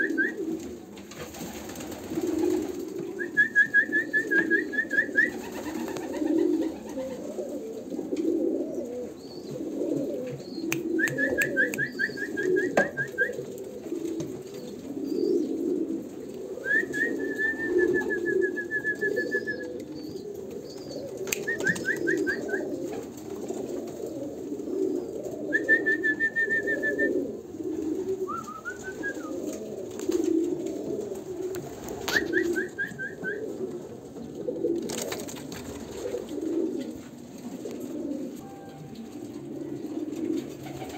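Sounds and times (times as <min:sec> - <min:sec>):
pigeons cooing: 0:00.0 - 0:40.9.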